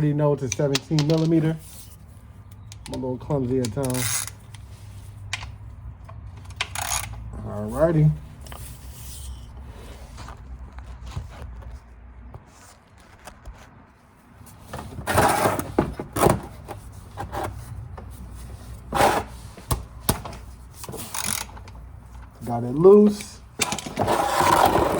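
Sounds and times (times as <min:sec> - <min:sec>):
wrench knocking and scraping metal: 0:02.5 - 0:04.7, 0:05.3 - 0:07.3, 0:19.0 - 0:24.9.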